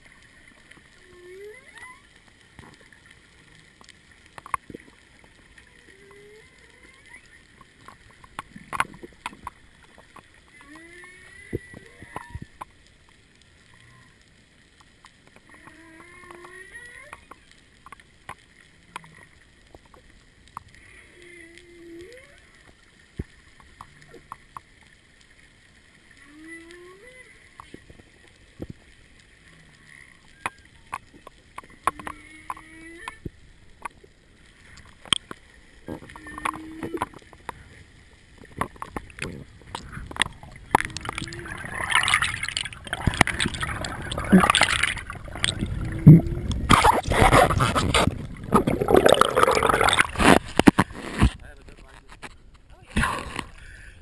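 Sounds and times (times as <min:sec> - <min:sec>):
sharp clicks and crackle: 0:00.0 - 0:53.8
whale song moans: 0:01.0 - 0:02.1, 0:05.6 - 0:07.4, 0:10.5 - 0:12.6, 0:15.4 - 0:17.5, 0:20.8 - 0:22.7, 0:26.2 - 0:27.8, 0:31.9 - 0:33.3, 0:35.8 - 0:37.2, 0:39.1 - 0:47.6.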